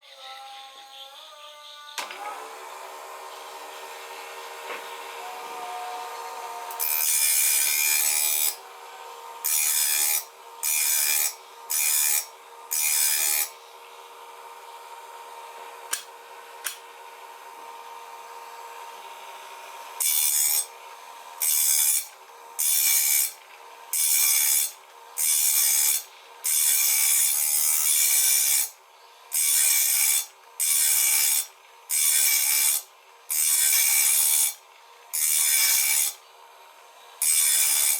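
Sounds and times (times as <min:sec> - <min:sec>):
machine motor humming: 0:02.0 - 0:06.8
grinding wheel rasping saw teeth: 0:04.7 - 0:08.7, 0:09.4 - 0:13.5, 0:20.0 - 0:20.8, 0:21.4 - 0:36.2, 0:37.2 - 0:37.9.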